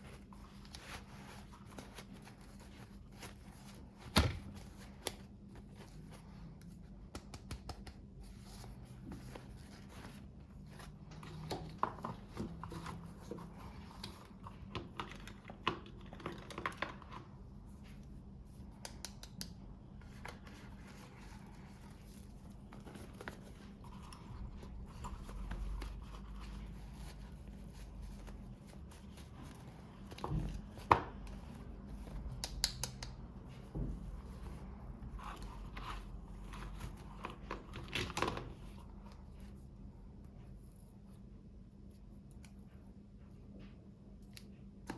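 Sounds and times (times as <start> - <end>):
small clicks and taps: 7.1 - 8.1, 18.8 - 19.6, 32.3 - 33.3.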